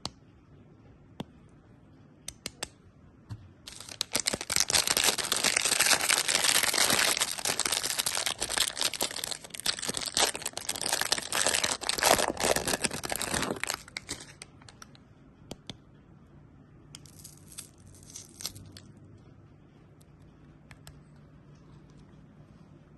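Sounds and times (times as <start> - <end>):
candy wrapper crinkling: 3.7 - 14.9, 17.0 - 18.9.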